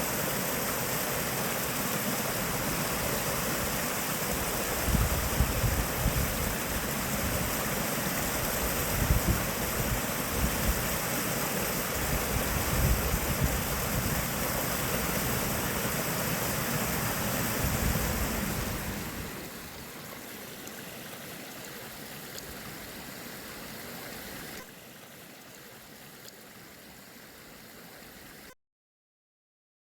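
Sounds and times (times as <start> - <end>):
waterfall water rushing: 0.0 - 28.5.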